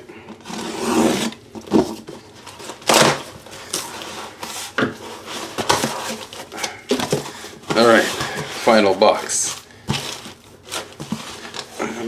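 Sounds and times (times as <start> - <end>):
cardboard boxes scraping and rustling: 0.2 - 12.0.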